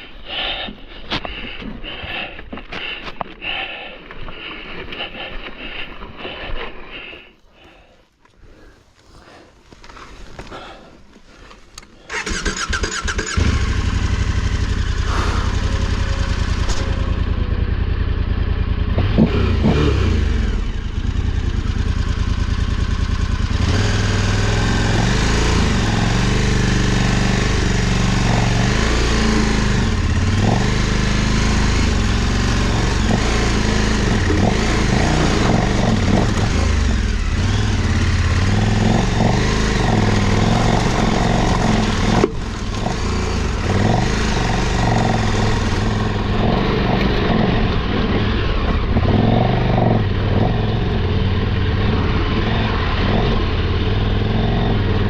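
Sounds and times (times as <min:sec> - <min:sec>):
motorcycle engine starting and running: 0:12.0 - 0:55.0.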